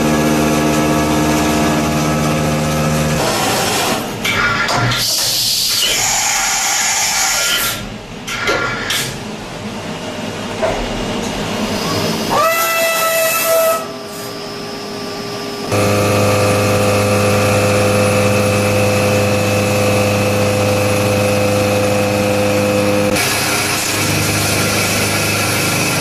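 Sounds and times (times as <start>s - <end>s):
cnc machine running: 0.0s - 4.2s, 12.1s - 26.0s
machine whine: 11.1s - 26.0s
pitched hum with overtones: 14.0s - 26.0s.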